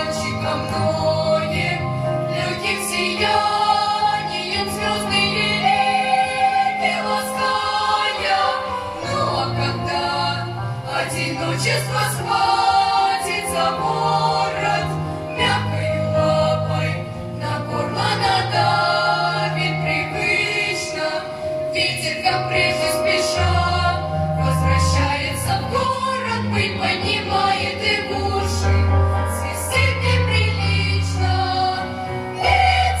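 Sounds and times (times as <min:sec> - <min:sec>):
choir singing: 0:00.0 - 0:33.0.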